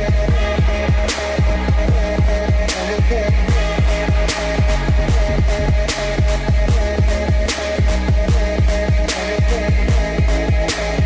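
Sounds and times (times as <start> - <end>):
electronic music with heavy bass beat: 0.0 - 11.0.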